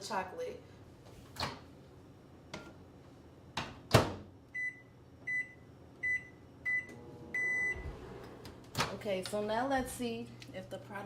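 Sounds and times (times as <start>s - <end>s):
short keypad beeps: 4.6s - 7.8s.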